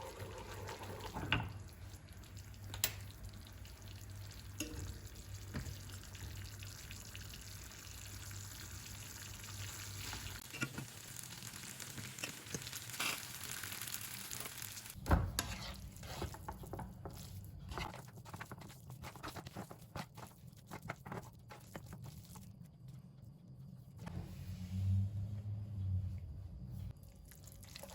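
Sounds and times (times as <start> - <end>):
food sizzling in a frying pan: 0.0 - 15.0.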